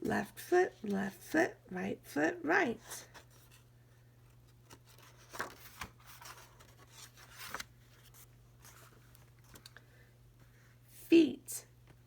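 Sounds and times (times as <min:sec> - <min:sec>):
low steady hum: 0:00.0 - 0:12.0
book pages rustling: 0:04.3 - 0:09.8.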